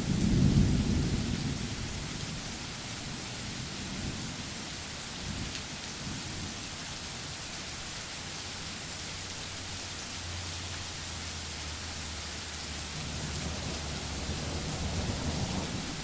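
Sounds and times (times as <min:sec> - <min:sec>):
low thunder rumbling: 0:00.0 - 0:04.6, 0:12.7 - 0:16.0
rain hissing: 0:00.0 - 0:16.0.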